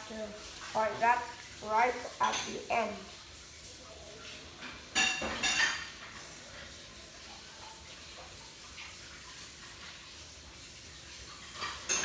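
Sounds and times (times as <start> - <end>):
low steady hiss: 0.0 - 12.0.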